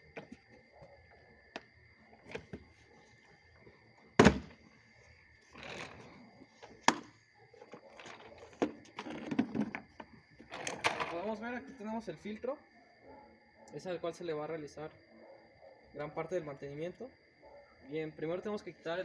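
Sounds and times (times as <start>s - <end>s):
loud hollow thunk: 4.2s - 4.6s.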